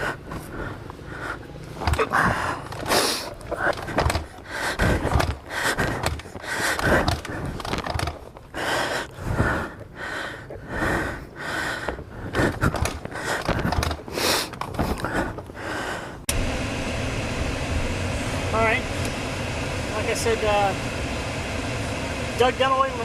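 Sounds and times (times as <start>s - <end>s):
person panting heavily: 0.0s - 16.3s.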